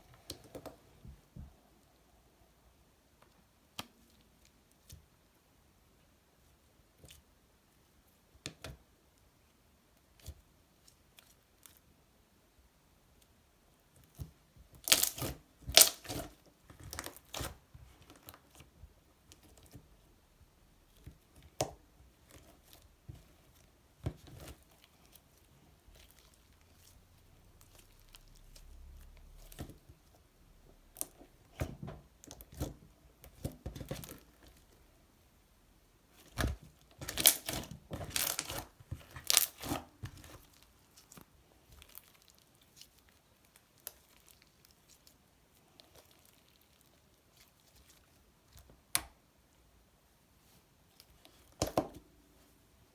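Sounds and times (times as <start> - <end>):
slime squished by hand: 14.1 - 18.6, 36.2 - 45.1.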